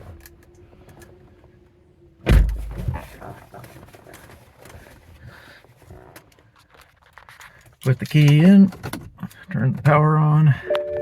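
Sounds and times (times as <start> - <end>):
car door shutting: 2.2 - 3.0.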